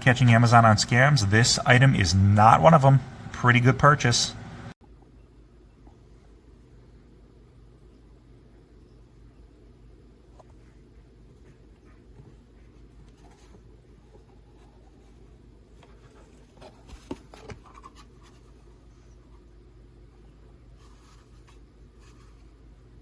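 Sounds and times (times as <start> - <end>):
low steady hum: 0.0 - 23.0
faint scratching: 20.8 - 22.7.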